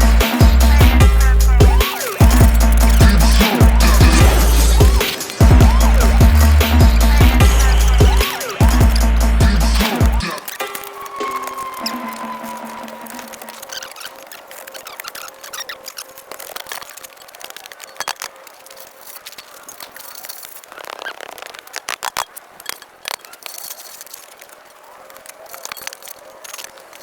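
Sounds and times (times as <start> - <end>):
shovel scraping dirt: 1.6 - 9.2.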